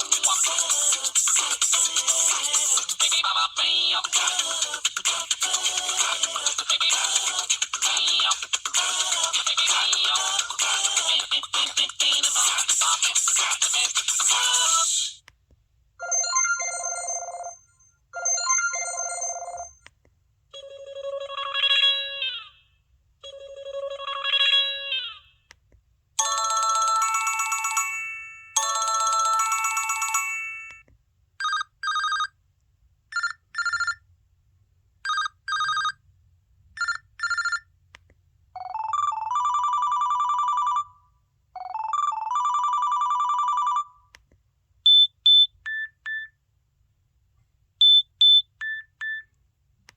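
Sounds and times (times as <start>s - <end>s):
electronic phone ringtones: 26.2s - 30.8s, 38.6s - 41.0s, 41.6s - 44.0s.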